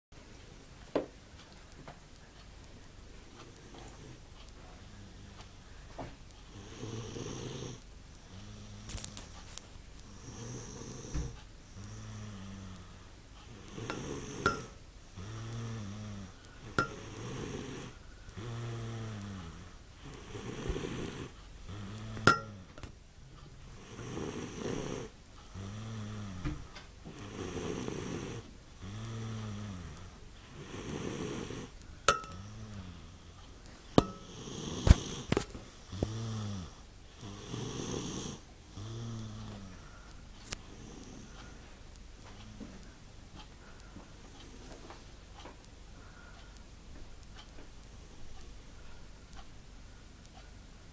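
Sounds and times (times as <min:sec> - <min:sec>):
man snoring: 0:06.5 - 0:08.9, 0:10.1 - 0:22.7, 0:23.7 - 0:31.7, 0:32.4 - 0:33.4, 0:34.0 - 0:35.3, 0:35.9 - 0:39.7.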